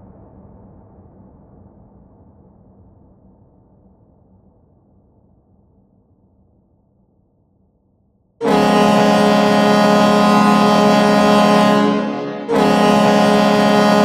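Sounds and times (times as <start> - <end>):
deep air horn blast: 8.4 - 14.0.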